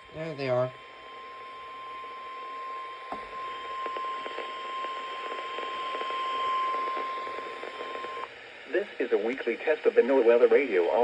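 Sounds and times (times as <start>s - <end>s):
steady high alarm tone: 0.0s - 8.3s
static hiss: 0.0s - 11.0s.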